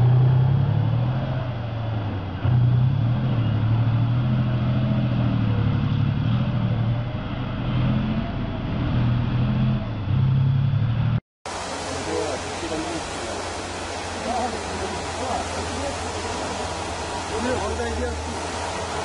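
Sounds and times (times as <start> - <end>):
engine running steadily: 9.8 - 19.0.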